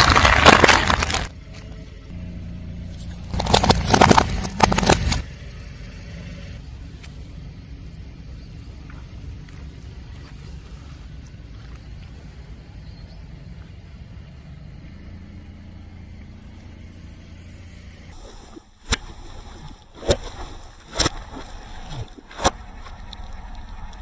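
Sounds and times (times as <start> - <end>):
objects cracking under tyre: 0.0 - 1.8, 2.8 - 5.3
car tyre rumbling: 0.0 - 18.2.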